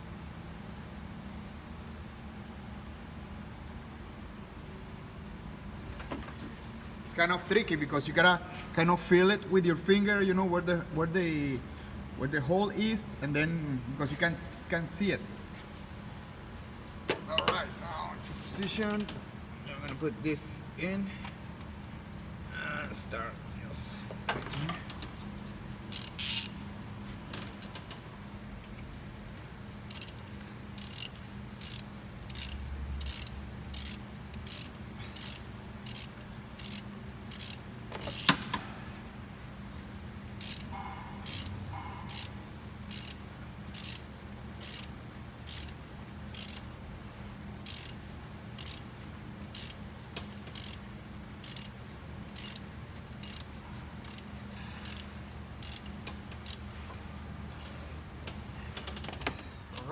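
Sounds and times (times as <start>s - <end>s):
ratchet wrench clicking: 25.9s - 26.6s, 29.9s - 38.6s, 40.4s - 46.8s, 47.6s - 48.9s, 49.5s - 50.8s, 51.4s - 56.7s.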